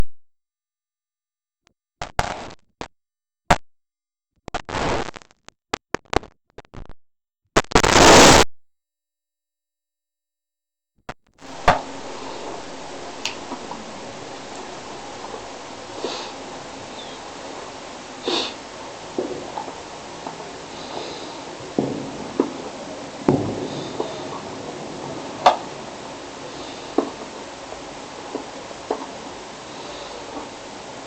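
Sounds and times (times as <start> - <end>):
bursts of rushing noise: 11.4 - 31.0
steady low hiss: 11.4 - 31.0.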